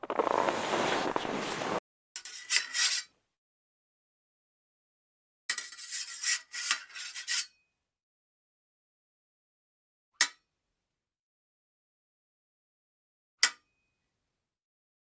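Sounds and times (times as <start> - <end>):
harsh scraping strokes: 0.0 - 1.8.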